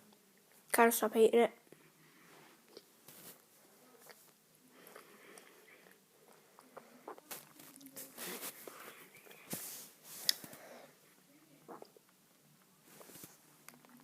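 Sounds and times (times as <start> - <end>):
person chewing candy: 4.0 - 7.8.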